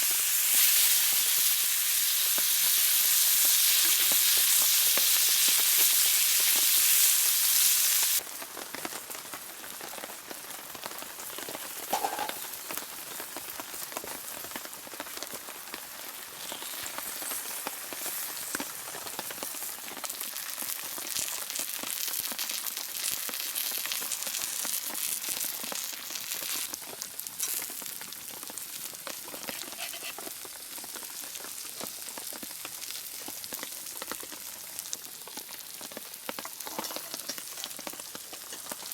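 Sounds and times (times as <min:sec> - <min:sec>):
rain pattering: 0:08.2 - 0:25.8, 0:30.3 - 0:38.9
loud sizzling: 0:15.9 - 0:20.0.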